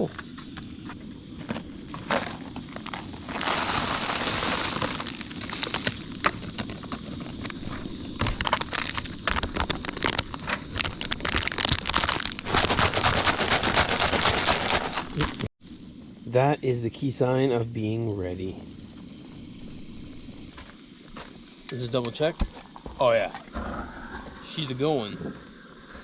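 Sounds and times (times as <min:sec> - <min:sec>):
boiling water crackling and sputtering: 0:00.0 - 0:26.0
steam hissing from pot lid: 0:01.7 - 0:08.2.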